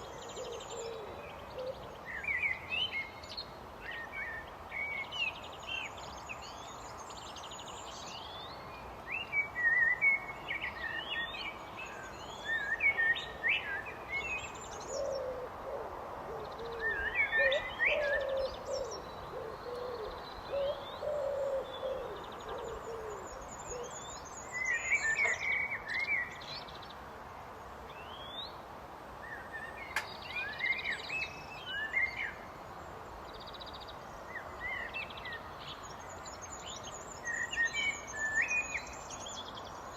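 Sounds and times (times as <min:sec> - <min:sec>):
outdoor background hiss: 0:00.0 - 0:39.9
blackbird singing: 0:07.4 - 0:15.4, 0:16.5 - 0:26.8, 0:33.4 - 0:39.8.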